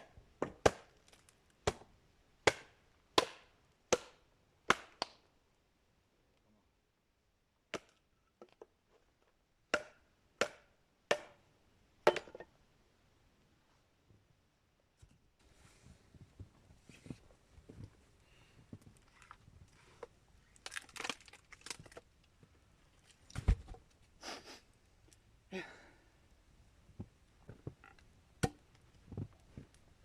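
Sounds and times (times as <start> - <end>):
axe chopping wood: 0.4 - 0.9, 1.6 - 5.1, 9.7 - 11.4, 12.1 - 12.4, 28.4 - 28.6.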